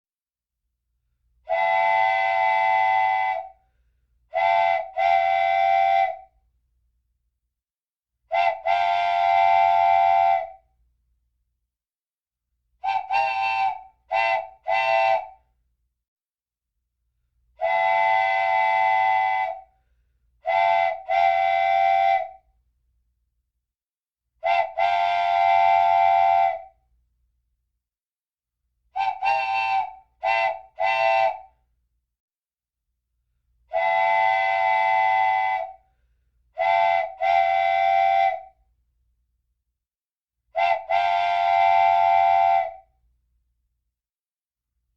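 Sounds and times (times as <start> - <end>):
wooden train whistle: 1.4 - 3.6, 4.3 - 6.4, 8.3 - 10.7, 12.8 - 15.5, 17.6 - 19.7, 20.4 - 22.5, 24.4 - 26.8, 29.0 - 31.6, 33.7 - 35.9, 36.6 - 38.6, 40.6 - 43.0.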